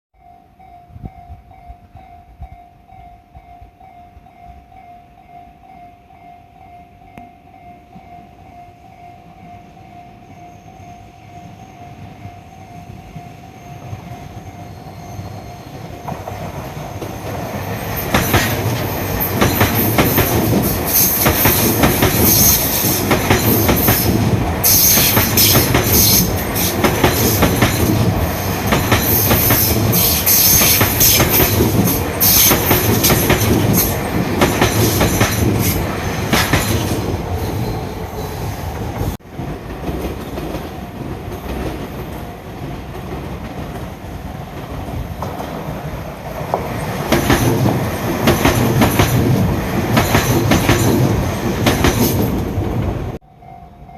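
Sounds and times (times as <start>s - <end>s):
level crossing warning bell: 0.2s - 16.9s, 53.2s - 53.9s
train passing: 0.2s - 53.9s
wheels clattering over rail joints: 38.9s - 53.2s.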